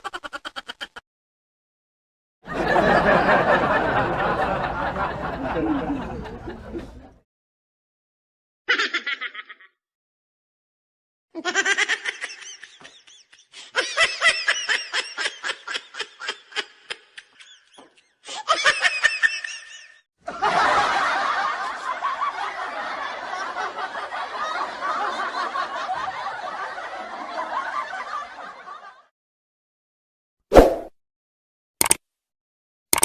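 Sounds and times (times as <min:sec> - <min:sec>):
person laughing in pulses: 0:00.0 - 0:01.0, 0:08.7 - 0:09.8, 0:11.4 - 0:19.9
several people laughing: 0:02.5 - 0:07.2, 0:08.7 - 0:09.8, 0:11.4 - 0:29.1.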